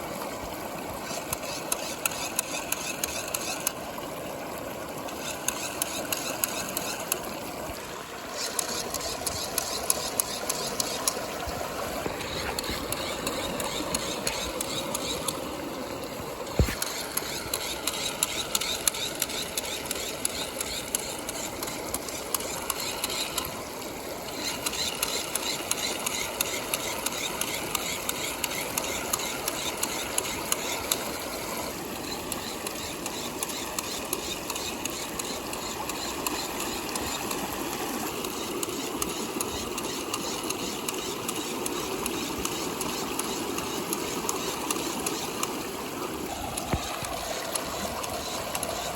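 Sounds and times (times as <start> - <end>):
small pump motor running: 0.0 - 48.9
water bubbling in a tube: 0.0 - 48.9.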